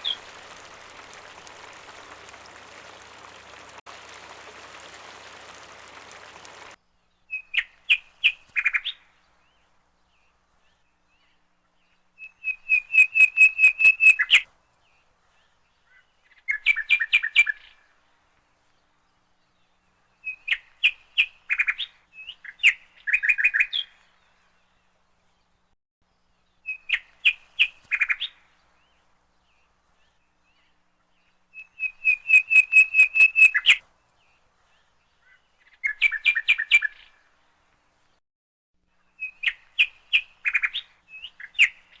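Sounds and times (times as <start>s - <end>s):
bird chirping: 0.0s - 6.8s.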